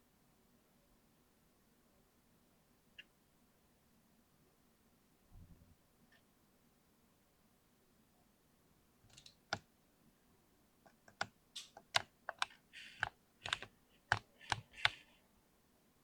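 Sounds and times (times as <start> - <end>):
mechanical keyboard typing: 9.1 - 9.7, 10.9 - 15.1.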